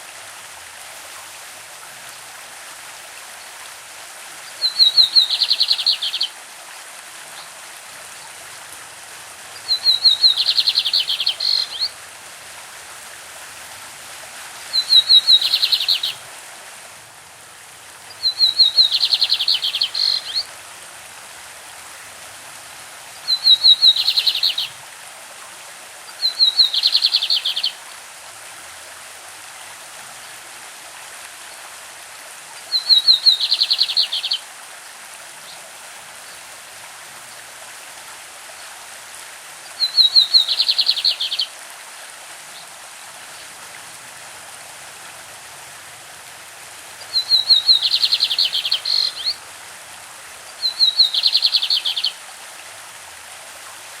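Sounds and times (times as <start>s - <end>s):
stream rushing: 0.0s - 54.0s
bird singing: 4.6s - 6.3s, 9.6s - 11.9s, 14.8s - 16.2s, 18.1s - 20.4s, 23.3s - 24.7s, 26.2s - 27.8s, 32.7s - 34.4s, 39.8s - 41.5s, 47.1s - 49.4s, 50.6s - 52.2s.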